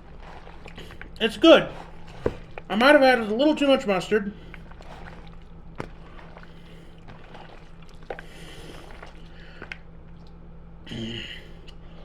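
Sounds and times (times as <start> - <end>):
low electrical hum: 0.0 - 12.0
wet clicks of food eaten: 4.4 - 10.5.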